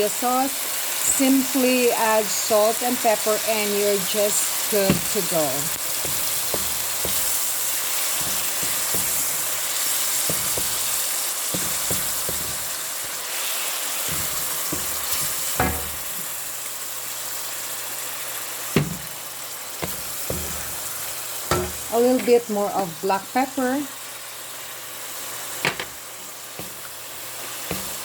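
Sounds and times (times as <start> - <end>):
food sizzling in hot oil: 0.0 - 28.0
utensil knocking against pot: 4.9 - 5.2, 6.0 - 7.5, 8.2 - 9.5, 10.2 - 10.9, 11.5 - 12.8, 14.1 - 16.3, 18.8 - 19.2, 21.5 - 21.9.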